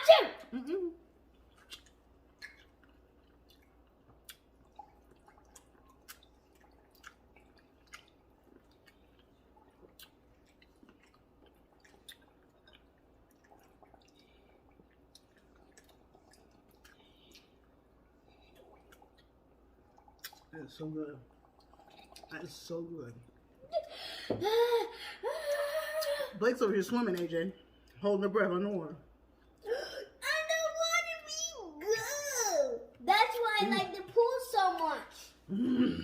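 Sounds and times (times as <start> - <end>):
wet chewing: 1.2 - 20.6.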